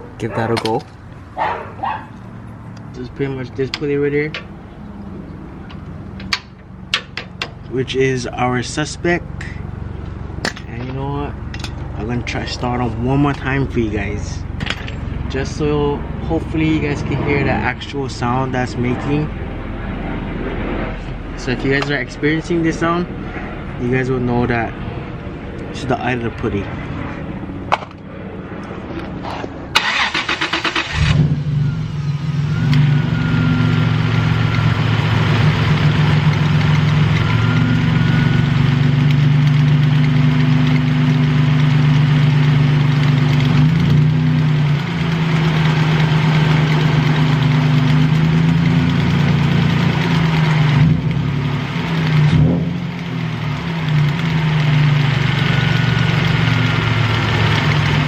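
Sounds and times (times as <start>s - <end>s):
engine idling with ticking knock: 10.0s - 15.6s, 32.1s - 58.0s
engine starter cranking: 29.8s - 31.3s.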